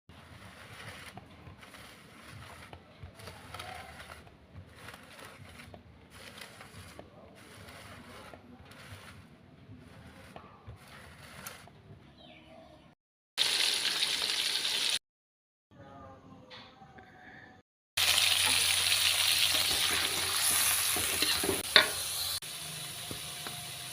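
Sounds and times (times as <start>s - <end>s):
food sizzling in hot oil: 13.4s - 15.0s, 18.0s - 23.9s.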